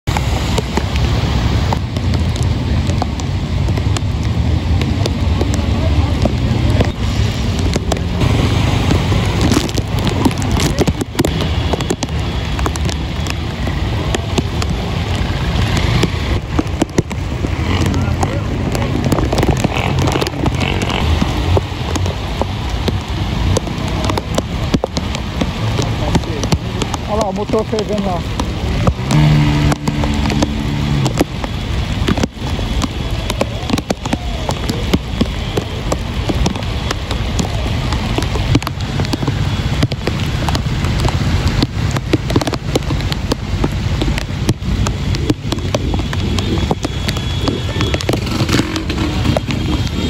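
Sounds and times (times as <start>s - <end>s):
heavy rain: 0.0s - 50.0s
raindrops ticking on camera: 0.0s - 50.0s
vehicle engines rumbling: 0.0s - 50.0s.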